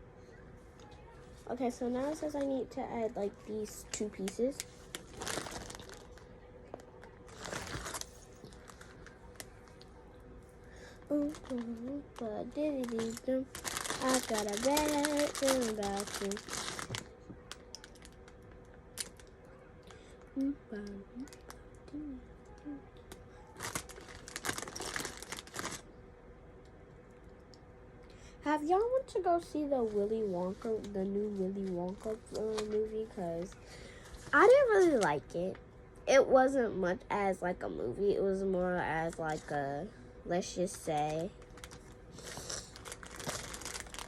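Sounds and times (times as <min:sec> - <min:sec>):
crinkling rustle: 0:03.5 - 0:10.0, 0:10.8 - 0:20.3, 0:23.1 - 0:25.9, 0:29.7 - 0:35.3, 0:40.7 - 0:44.0.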